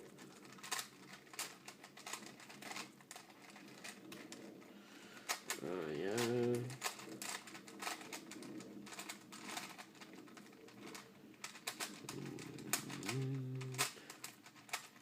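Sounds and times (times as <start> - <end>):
puzzle cube clicking: 0.1 - 15.0
person humming: 5.6 - 6.8, 12.1 - 14.0.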